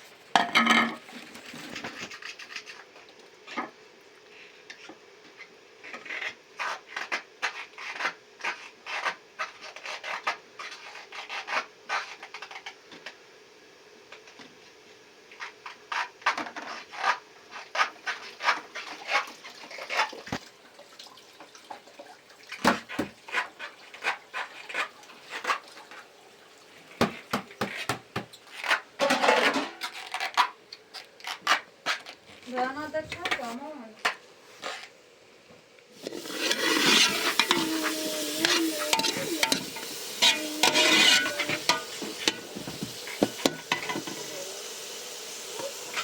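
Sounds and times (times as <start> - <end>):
rubbing and scraping on surface: 5.8 - 12.7, 15.4 - 20.2, 27.6 - 33.9, 36.0 - 44.5.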